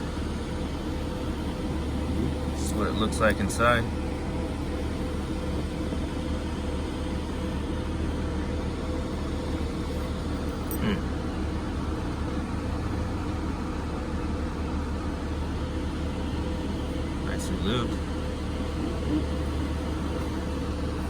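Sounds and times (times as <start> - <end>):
low mechanical hum: 0.0 - 21.0.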